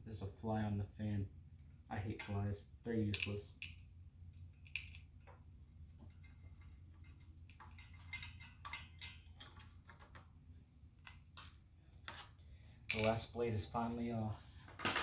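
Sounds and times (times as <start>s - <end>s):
low steady hum: 0.0s - 14.9s
small metal parts knocking: 4.6s - 5.4s, 6.0s - 10.3s, 12.9s - 13.2s.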